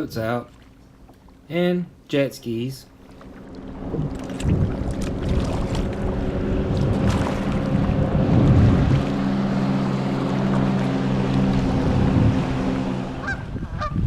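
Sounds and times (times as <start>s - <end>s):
motorboat engine drone: 2.9s - 14.0s
choppy water rushing: 3.0s - 14.0s
wind buffeting microphone: 3.5s - 14.0s.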